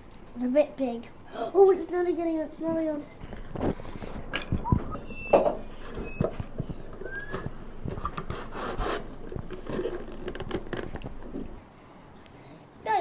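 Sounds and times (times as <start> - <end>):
rubbing and scraping on box: 8.0 - 10.0.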